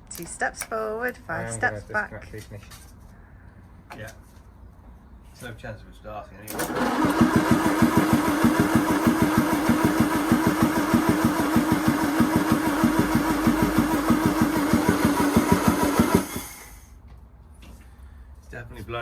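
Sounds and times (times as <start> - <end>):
engine cranking on starter motor: 6.5 - 16.9
starter motor whine: 6.5 - 16.9.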